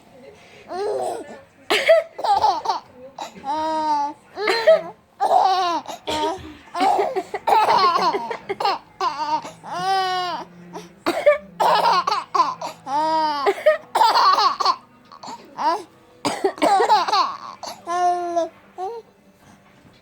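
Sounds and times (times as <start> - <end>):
person coughing: 1.0 - 3.6, 4.4 - 8.8, 11.1 - 12.2, 13.5 - 15.5, 16.3 - 17.8
baby laughing: 2.2 - 10.4, 11.6 - 15.8, 16.7 - 18.2.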